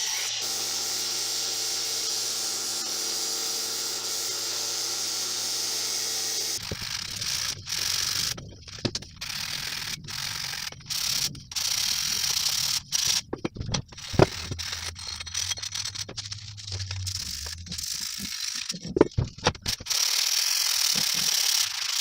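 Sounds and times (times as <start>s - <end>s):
scraping: 6.6s - 19.9s
hand tools ratcheting clicks: 6.6s - 22.0s.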